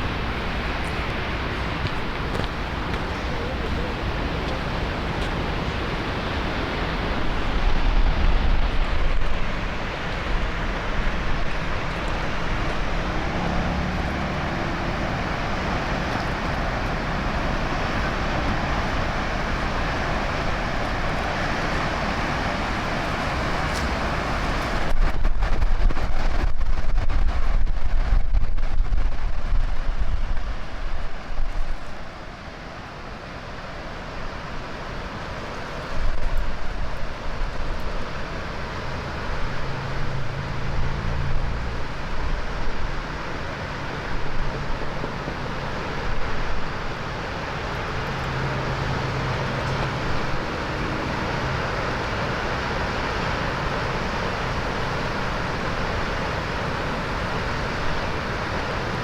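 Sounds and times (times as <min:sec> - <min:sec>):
waterfall rushing: 0:00.0 - 0:28.0, 0:29.2 - 0:59.0
wind gusting on microphone: 0:00.0 - 0:59.0.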